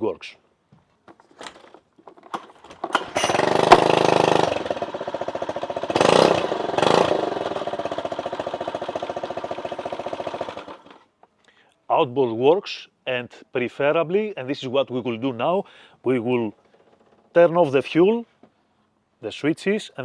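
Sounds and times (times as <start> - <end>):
outboard motor starting and running: 2.4 - 11.1.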